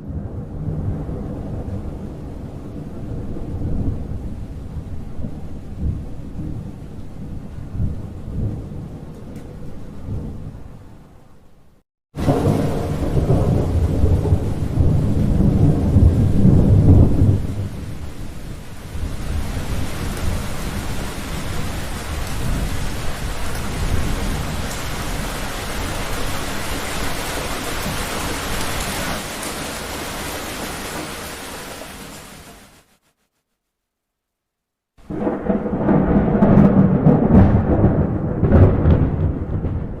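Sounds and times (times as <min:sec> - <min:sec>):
thunder rumbling: 0:00.0 - 0:11.1, 0:12.2 - 0:32.2, 0:35.0 - 0:40.0
heavy rain: 0:12.2 - 0:33.1, 0:35.0 - 0:40.0.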